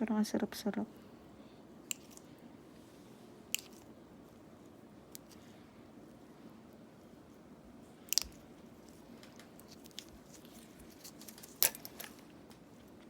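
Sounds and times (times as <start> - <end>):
faint steady hum: 0.0 - 13.0
pedicure tool crunching dry skin: 3.5 - 3.9, 8.1 - 12.2.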